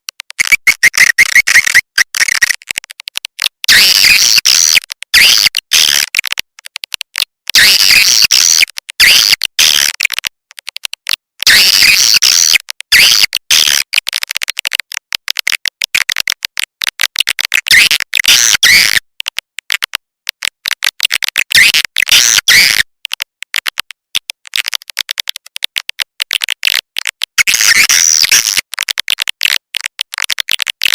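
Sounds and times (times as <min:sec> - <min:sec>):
rapid bird clicks: 0:00.1 - 0:03.6, 0:04.6 - 0:07.6, 0:09.7 - 0:11.5, 0:13.7 - 0:18.2, 0:18.9 - 0:27.8, 0:28.4 - 0:30.9.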